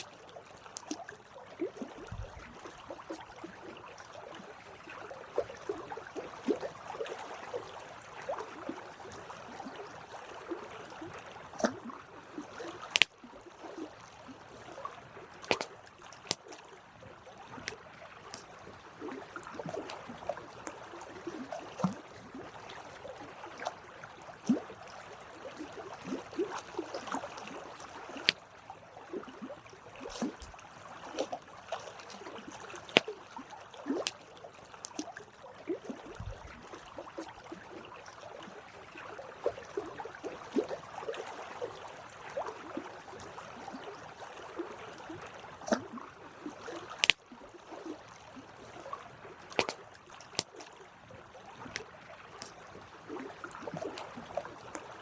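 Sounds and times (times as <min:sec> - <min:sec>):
campfire crackling and popping: 0:12.9 - 0:13.1, 0:28.2 - 0:28.4, 0:47.0 - 0:47.2.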